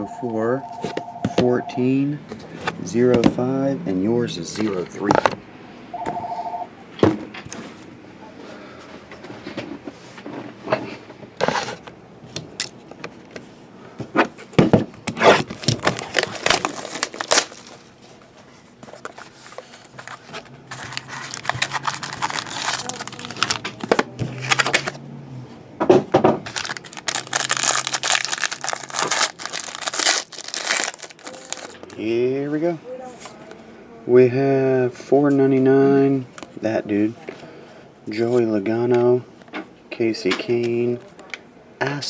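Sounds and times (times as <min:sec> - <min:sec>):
packs being torn open: 0:15.1 - 0:17.8, 0:18.9 - 0:25.0, 0:26.4 - 0:32.0
wrapper crinkling: 0:15.3 - 0:18.2, 0:18.8 - 0:25.0, 0:26.4 - 0:32.0.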